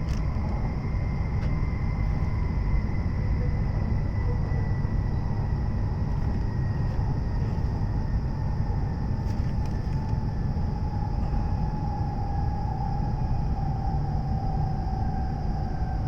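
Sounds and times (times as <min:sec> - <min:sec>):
train running rumble: 0:00.0 - 0:16.0
faint electric whine: 0:04.8 - 0:11.2.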